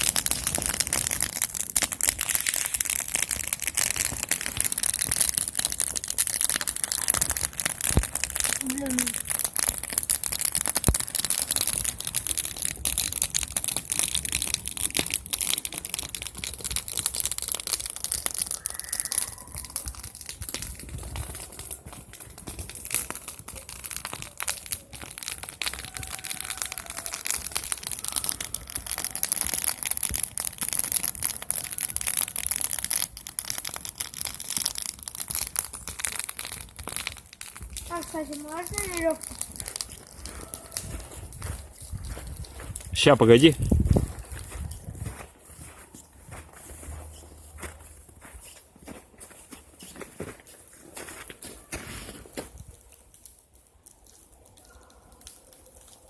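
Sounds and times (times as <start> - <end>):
campfire crackling: 0.0 - 56.0.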